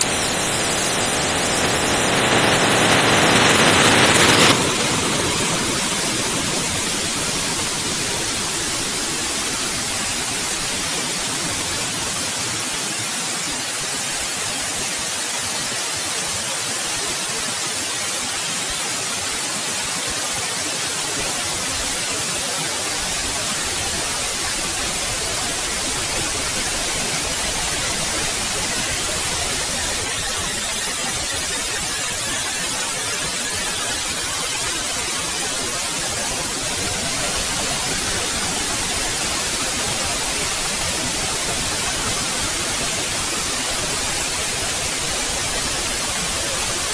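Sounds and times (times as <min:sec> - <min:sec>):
white noise hiss: 0:00.0 - 0:46.9.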